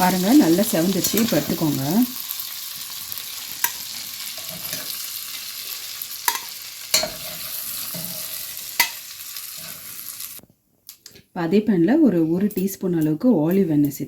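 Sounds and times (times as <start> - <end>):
chicken sizzling in butter: 0.0 - 10.4.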